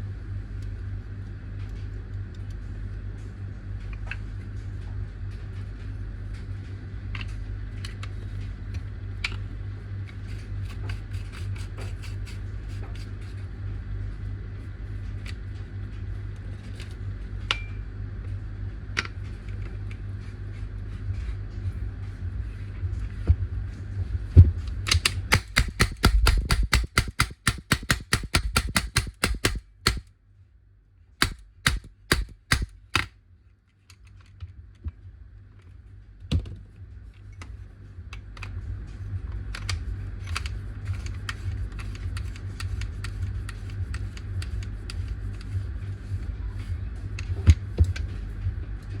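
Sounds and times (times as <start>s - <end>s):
low hum: 8.1s - 33.1s
paintball marker firing: 24.9s - 30.1s, 31.2s - 33.1s.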